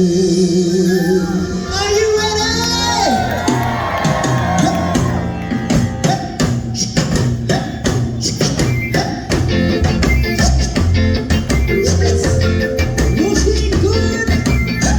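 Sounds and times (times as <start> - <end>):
ska band playing: 1.4 - 14.9
drum kit beating: 3.1 - 14.9.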